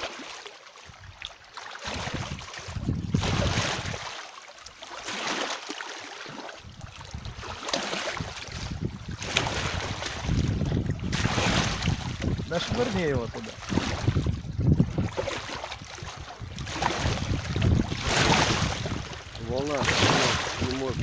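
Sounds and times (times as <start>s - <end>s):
rush of open water: 0.0s - 21.0s
wind buffeting microphone: 1.8s - 4.1s, 6.6s - 21.0s.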